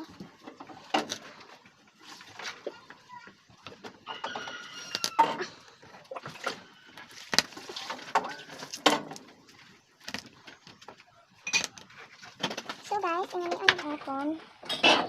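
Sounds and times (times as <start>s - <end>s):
dishes and utensils clattering: 11.4s - 12.6s, 14.6s - 15.0s.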